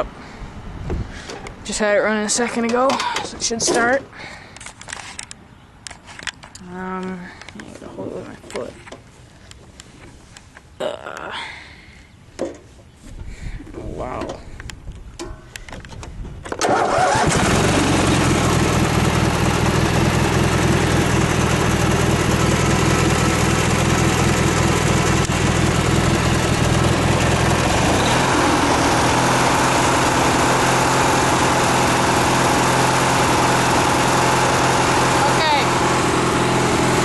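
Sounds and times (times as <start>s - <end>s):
lawn mower engine running: 16.6s - 37.0s.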